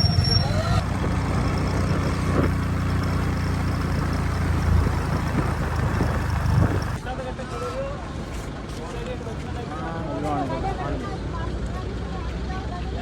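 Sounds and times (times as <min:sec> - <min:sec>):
vehicle engine droning: 0:00.0 - 0:07.4.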